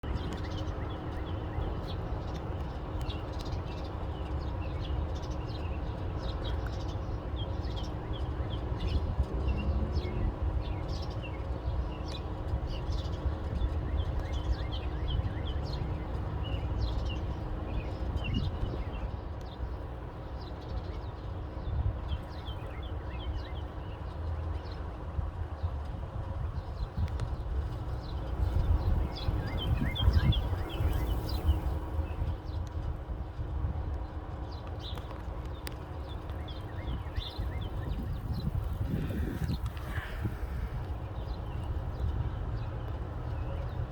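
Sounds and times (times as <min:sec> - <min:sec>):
birds chirping and singing: 0:00.1 - 0:21.2, 0:27.9 - 0:32.7, 0:34.5 - 0:43.8
steady low rumble: 0:25.2 - 0:43.9.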